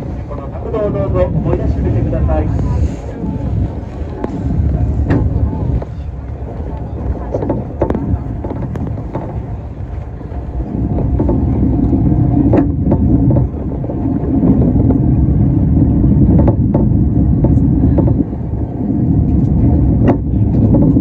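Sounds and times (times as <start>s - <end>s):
cable car rumbling: 0.0s - 21.0s.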